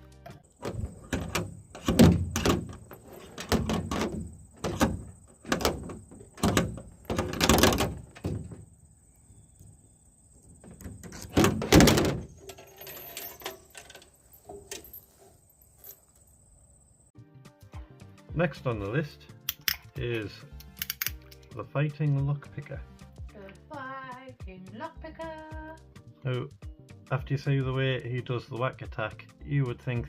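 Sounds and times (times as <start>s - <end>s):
metallic handcuff knocks and clanks: 20.6s - 21.4s.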